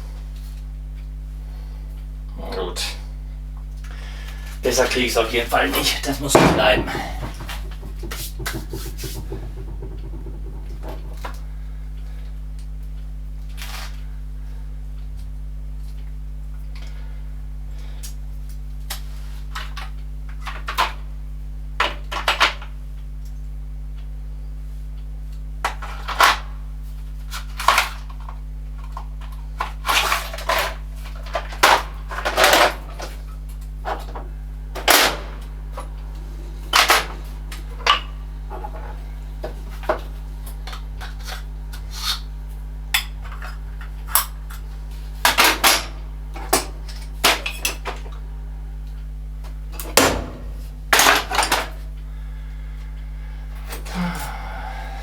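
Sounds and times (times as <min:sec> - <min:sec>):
steady low hum: 0:00.0 - 0:19.0, 0:26.5 - 0:55.0.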